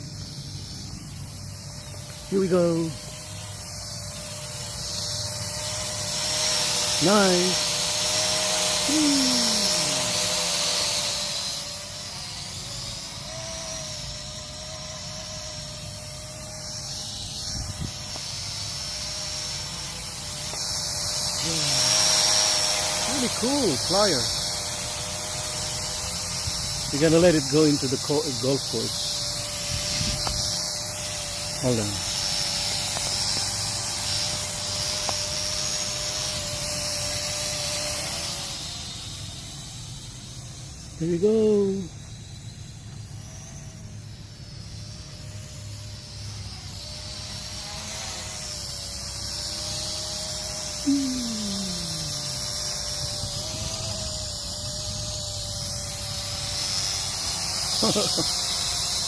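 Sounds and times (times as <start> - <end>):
drone propellers whining: 0.0 - 42.0, 42.7 - 59.0
wind rumbling on microphone: 17.5 - 18.0, 29.7 - 30.6.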